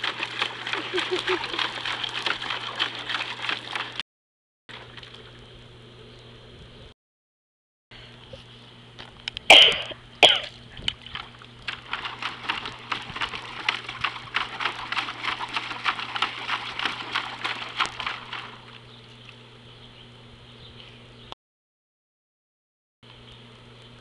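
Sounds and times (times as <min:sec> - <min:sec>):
puppy lapping water: 0:00.0 - 0:04.0, 0:10.2 - 0:18.8
puppy coughing: 0:09.5 - 0:10.5.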